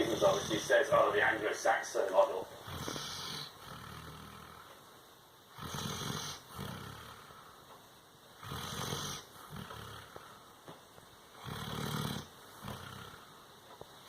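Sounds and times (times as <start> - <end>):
dog snoring: 0.0 - 1.1, 2.6 - 4.8, 5.5 - 7.6, 8.4 - 10.4, 11.3 - 13.4.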